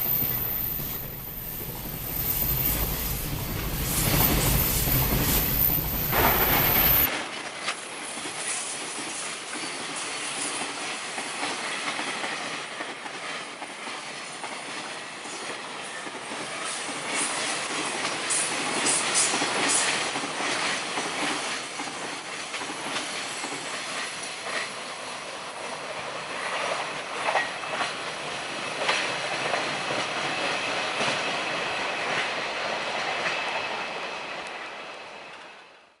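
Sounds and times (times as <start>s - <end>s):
wheels clacking over rail joints: 0.0s - 7.1s
freight train wagons rolling: 0.0s - 14.9s.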